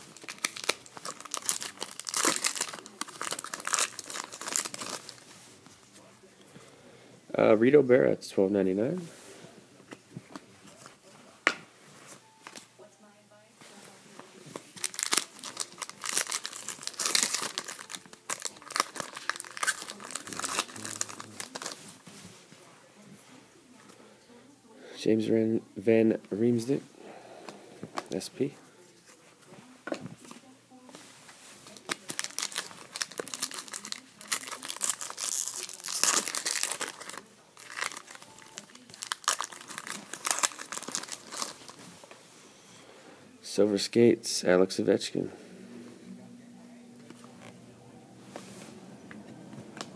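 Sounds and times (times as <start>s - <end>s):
wrapper tearing and crinkling: 0.0s - 5.2s, 14.6s - 21.8s, 31.6s - 41.8s.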